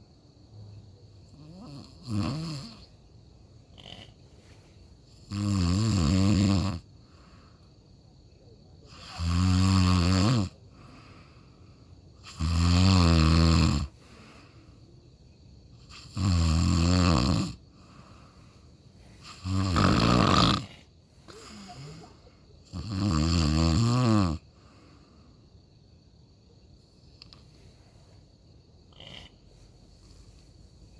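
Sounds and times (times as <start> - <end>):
person snoring: 1.3 - 2.9, 5.2 - 6.8, 8.9 - 11.1, 12.2 - 14.3, 15.9 - 18.3, 19.1 - 22.1, 22.7 - 24.4
quiet breathing: 2.6 - 5.3, 6.8 - 9.2, 10.5 - 12.3, 13.8 - 16.1, 17.6 - 19.9, 20.5 - 22.8, 24.4 - 30.9.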